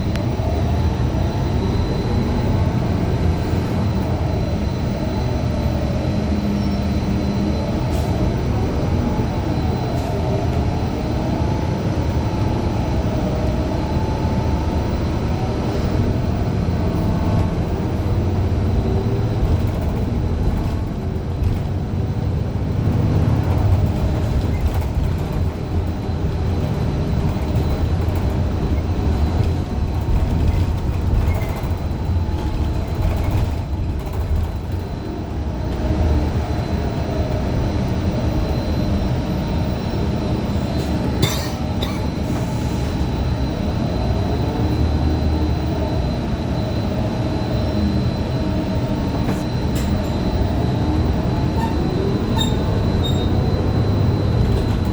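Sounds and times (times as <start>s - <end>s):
bus engine running: 0.0s - 54.9s.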